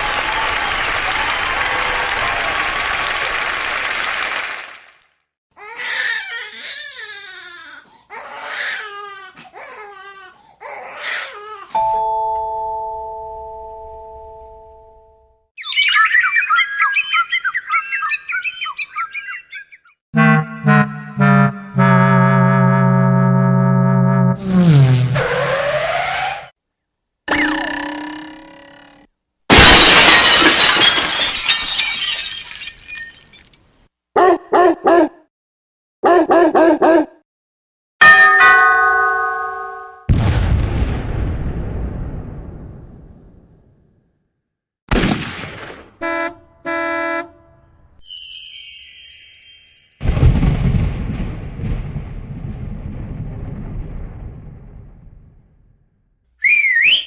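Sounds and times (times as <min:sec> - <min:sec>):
baby crying: 0:05.6 - 0:11.8
doorbell chime: 0:11.8 - 0:15.3, 0:38.0 - 0:40.1, 0:48.0 - 0:50.4
glass shattering: 0:29.5 - 0:33.6, 0:48.0 - 0:50.6.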